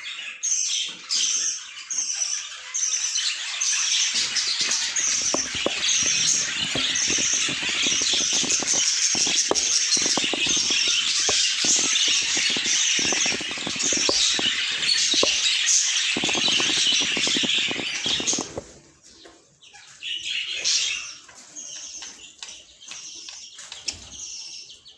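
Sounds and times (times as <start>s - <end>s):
budgerigars chattering and warbling: 4.0s - 18.8s
wings flapping: 4.2s - 18.9s.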